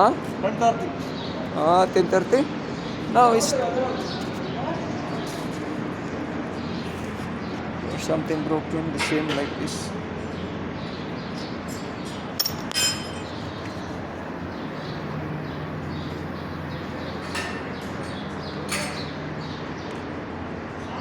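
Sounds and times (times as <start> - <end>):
steady background hum: 0.0 - 21.0
metal parts clinking: 11.8 - 13.6, 16.0 - 19.6.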